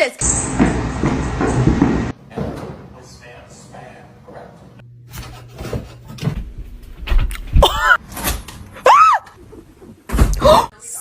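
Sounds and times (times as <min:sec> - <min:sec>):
knocks and thumps: 0:00.5 - 0:02.9.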